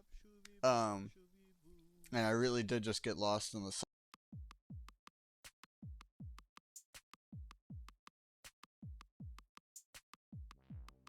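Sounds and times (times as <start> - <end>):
electronic drum machine beat: 4.2 - 11.0
hi-hat clicks: 4.2 - 11.0
deep kick drums: 4.3 - 5.0, 5.8 - 6.4, 7.3 - 8.0, 8.8 - 9.4, 10.3 - 11.0.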